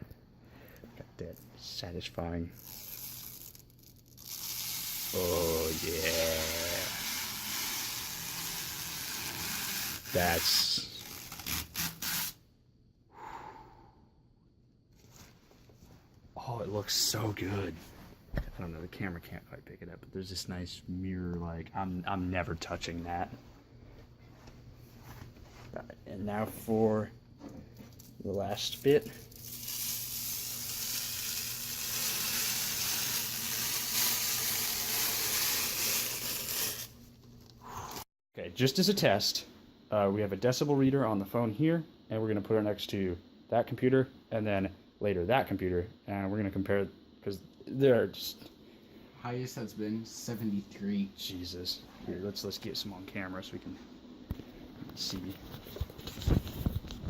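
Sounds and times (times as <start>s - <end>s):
faint steady hum: 0.0s - 57.0s
plastic film peeling: 2.6s - 12.4s, 28.7s - 37.5s, 55.5s - 57.0s.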